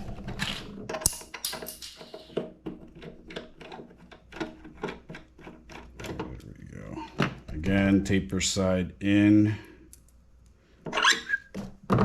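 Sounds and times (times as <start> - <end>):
small parts clicking and tapping: 0.4 - 6.5.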